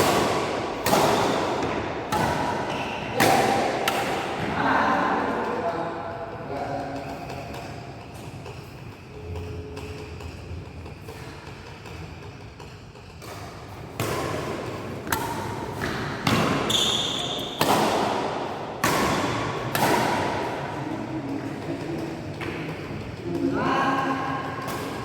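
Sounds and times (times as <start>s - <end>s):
racket hitting shuttlecock: 0.0s - 4.6s, 11.1s - 23.1s, 24.4s - 25.0s.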